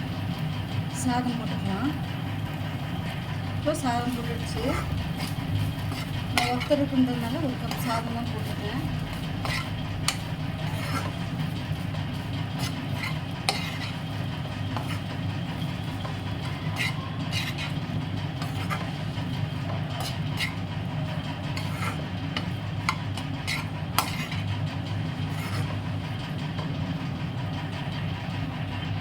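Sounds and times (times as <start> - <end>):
steady low hum: 0.0 - 29.0
spoon scraping a pan: 3.7 - 26.7.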